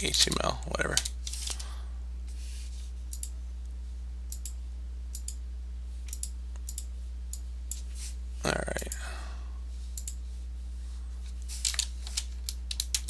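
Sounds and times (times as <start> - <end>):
steady low hum: 0.0 - 13.0
computer mouse clicking: 3.1 - 3.4, 4.3 - 5.4, 6.1 - 7.8, 10.0 - 10.2, 11.6 - 13.0.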